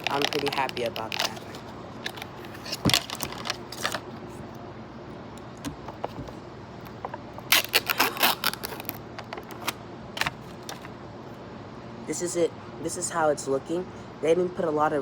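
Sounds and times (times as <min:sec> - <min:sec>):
plastic packaging crinkling: 0:00.0 - 0:04.1, 0:05.9 - 0:10.9.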